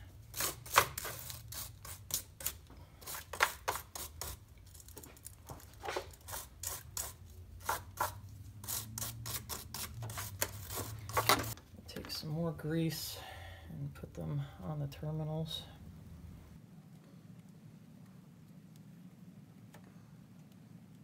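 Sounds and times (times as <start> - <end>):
wire brush scraping metal: 0.0 - 11.6.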